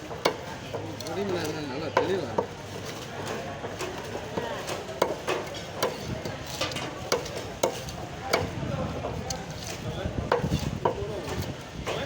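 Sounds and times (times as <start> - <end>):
steady noisy background: 0.0 - 12.0.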